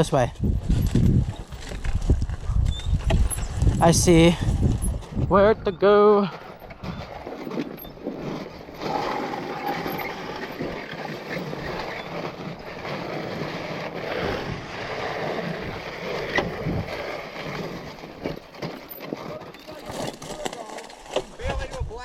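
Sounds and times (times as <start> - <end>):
wind on microphone: 0.0 - 6.0, 6.6 - 10.9, 13.4 - 18.0
bike parts rattling: 0.0 - 14.7, 15.6 - 22.0
bike tyres rushing on dirt: 0.0 - 22.0.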